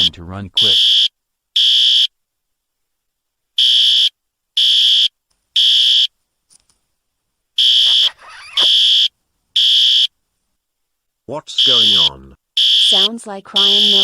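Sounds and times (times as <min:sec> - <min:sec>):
fire alarm horn blasts: 0:11.6 - 0:14.0.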